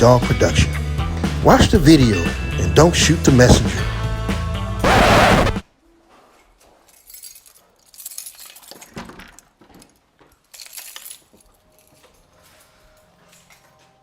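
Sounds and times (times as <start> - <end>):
small hard objects clinking: 7.0 - 9.5.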